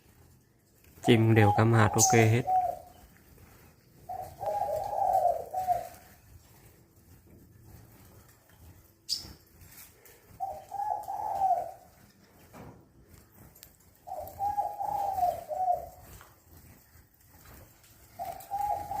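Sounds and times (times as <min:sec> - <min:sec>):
dove cooing: 0:00.9 - 0:07.1, 0:09.9 - 0:12.6, 0:13.9 - 0:19.0.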